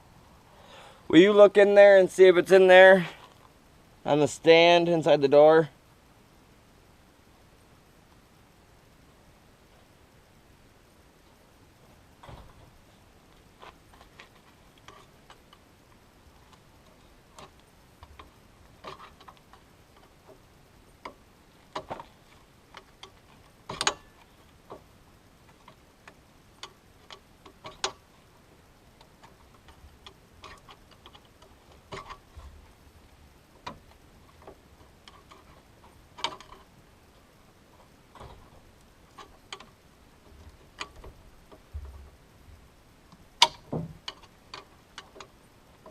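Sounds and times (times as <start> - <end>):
hand tools clicking and knocking: 22.7 - 24.2.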